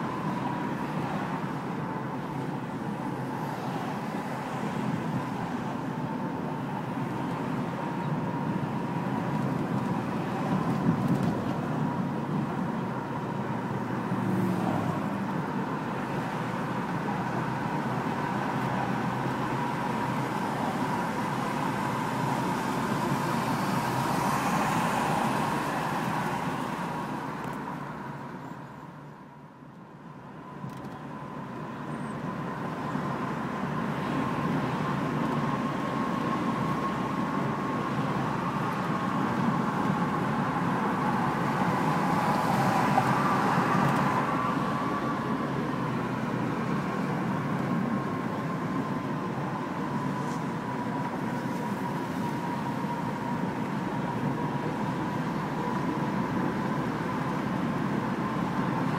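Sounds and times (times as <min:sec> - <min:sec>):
car road and engine noise: 0:00.0 - 0:58.9.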